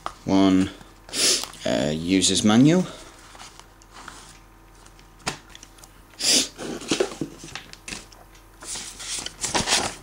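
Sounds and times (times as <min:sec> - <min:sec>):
paper rustling: 0:06.6 - 0:10.0.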